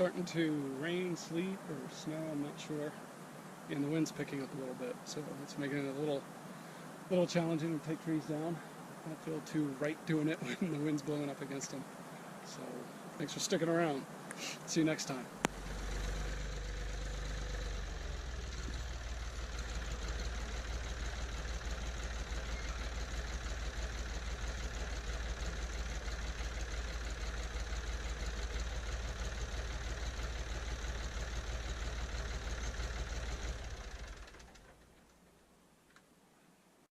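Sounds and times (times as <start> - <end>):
tractor engine idling: 14.3 - 35.3.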